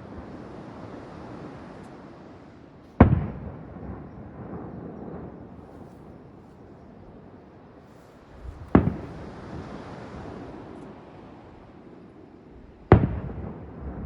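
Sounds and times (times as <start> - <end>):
fireworks bursting with echo: 2.9 - 10.4, 12.9 - 14.0.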